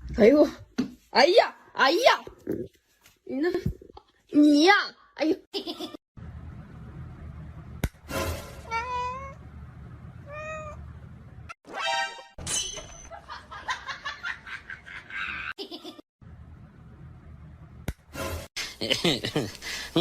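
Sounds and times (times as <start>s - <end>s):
cat meowing: 8.7s - 9.4s, 10.2s - 10.8s.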